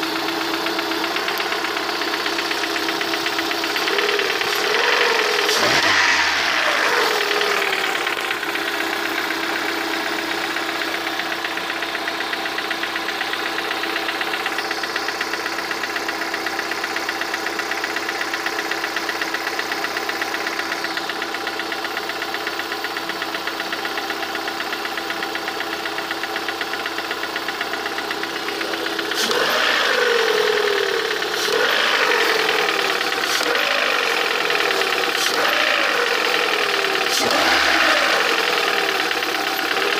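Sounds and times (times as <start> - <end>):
car engine idling with knock: 0.0 - 39.9
engine revving: 3.4 - 11.2, 28.4 - 39.9.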